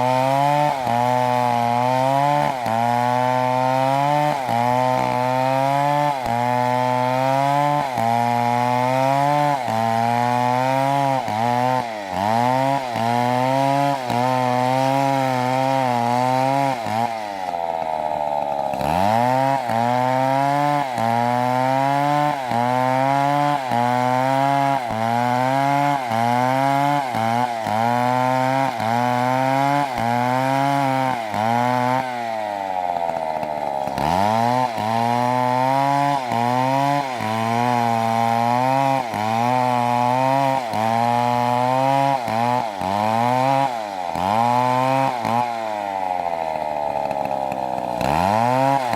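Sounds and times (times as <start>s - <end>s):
chainsaw cutting wood: 0.0s - 48.9s.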